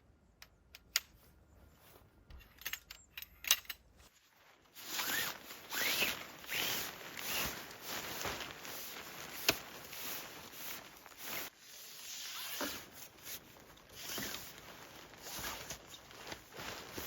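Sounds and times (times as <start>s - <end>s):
footsteps crunching through snow: 4.1s - 11.6s, 12.6s - 17.0s.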